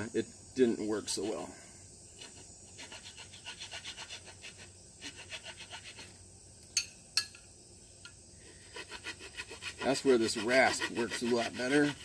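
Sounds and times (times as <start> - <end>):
rasp filing wood: 2.2 - 6.1, 8.6 - 12.0.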